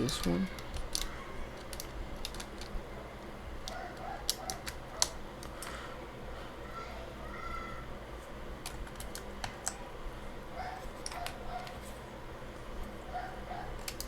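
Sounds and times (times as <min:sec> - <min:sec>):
keycaps clicking onto keyboard: 0:00.5 - 0:02.8, 0:03.6 - 0:05.7, 0:08.6 - 0:09.8, 0:13.8 - 0:14.0.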